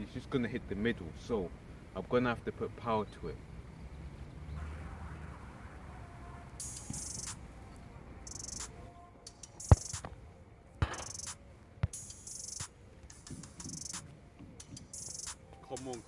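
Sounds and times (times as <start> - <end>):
ball striking goal frame: 6.6 - 7.4, 9.5 - 10.1, 10.8 - 14.0
short high-pitched chirps: 6.6 - 7.4, 8.3 - 8.7, 13.5 - 14.0
football kick thud: 9.6 - 10.1, 10.8 - 12.0.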